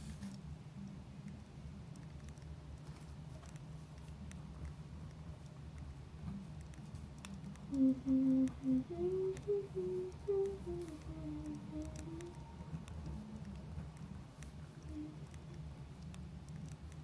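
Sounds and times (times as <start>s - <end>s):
faint clicks: 0.2s - 17.0s
person humming a melody: 7.7s - 13.6s, 14.8s - 15.4s.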